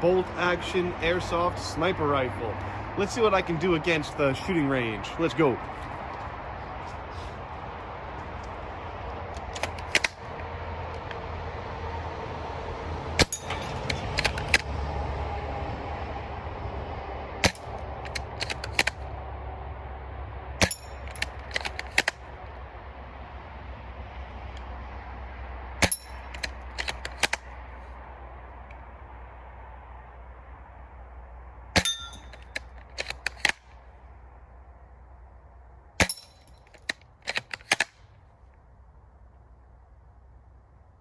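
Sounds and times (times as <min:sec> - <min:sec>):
low background rumble: 0:00.0 - 0:41.0
rifle bolt clicking: 0:09.3 - 0:10.2, 0:13.2 - 0:14.7, 0:17.4 - 0:19.0, 0:20.6 - 0:22.2, 0:25.8 - 0:27.4, 0:31.8 - 0:33.6, 0:36.0 - 0:38.0
pellets striking targets: 0:31.8 - 0:33.5, 0:36.0 - 0:36.5.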